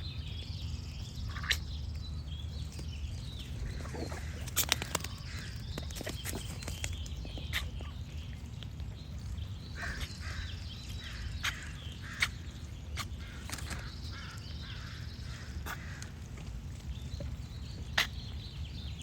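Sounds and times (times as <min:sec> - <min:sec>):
birds calling: 0:00.0 - 0:19.0
steady low rumble: 0:00.0 - 0:19.0
ducks quacking: 0:03.5 - 0:05.7.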